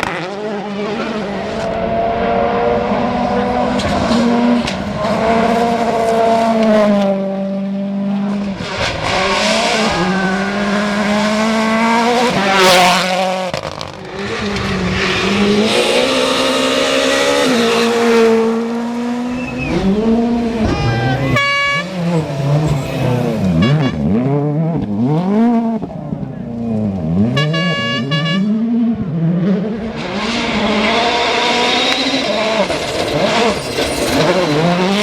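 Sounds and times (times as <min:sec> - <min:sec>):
rally car engines revving: 0:00.0 - 0:35.0.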